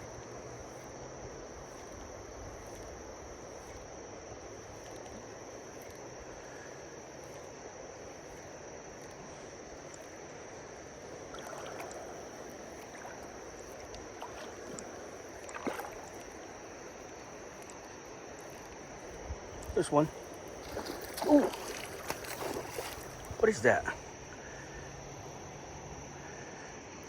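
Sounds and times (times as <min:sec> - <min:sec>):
high insect drone: 0:00.0 - 0:27.0
light splashes and clicks: 0:01.6 - 0:03.9, 0:04.5 - 0:10.3, 0:11.0 - 0:23.7
river current rushing: 0:19.8 - 0:24.1.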